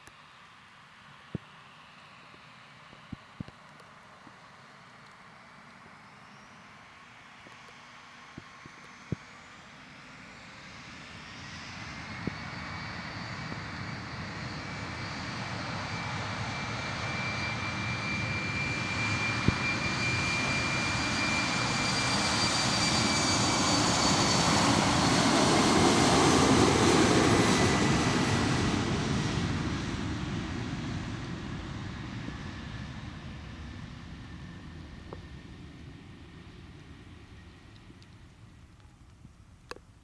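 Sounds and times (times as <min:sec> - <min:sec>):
airliner engines rumbling: 0:00.2 - 0:40.0.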